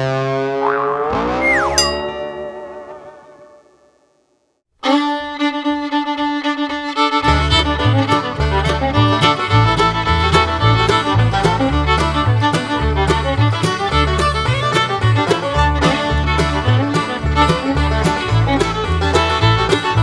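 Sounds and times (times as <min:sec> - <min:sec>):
upbeat fiddle music with beat: 0:04.8 - 0:20.0.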